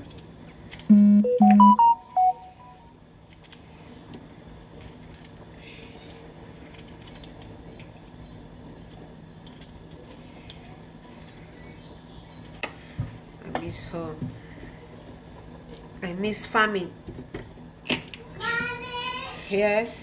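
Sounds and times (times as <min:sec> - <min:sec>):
low steady hum: 0:00.0 - 0:08.4.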